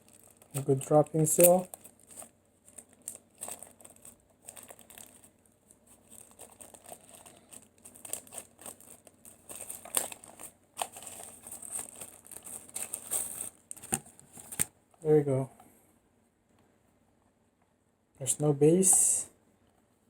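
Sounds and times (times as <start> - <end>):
plastic packaging crinkling: 0.0 - 14.7.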